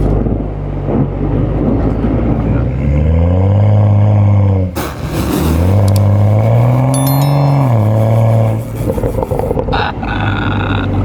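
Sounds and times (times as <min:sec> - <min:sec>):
car engine accelerating hard: 0:00.2 - 0:06.9.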